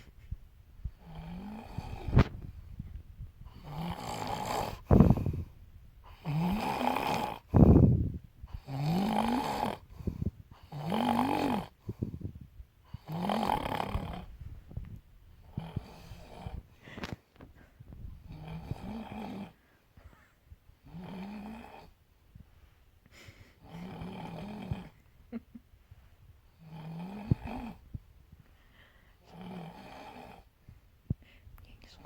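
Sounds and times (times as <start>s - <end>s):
rhythmic snoring: 0.9s - 2.3s, 3.5s - 14.4s, 15.4s - 17.0s, 18.2s - 19.6s, 20.8s - 22.0s, 23.3s - 25.4s, 26.5s - 27.9s, 29.2s - 30.6s.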